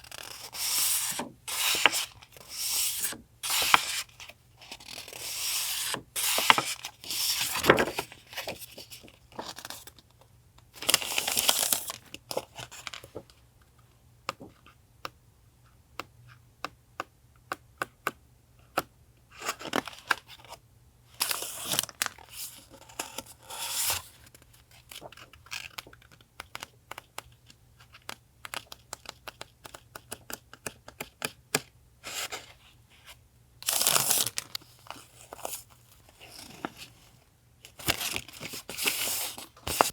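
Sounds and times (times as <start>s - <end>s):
paper tearing and crinkling: 0.1s - 4.1s, 4.8s - 8.1s.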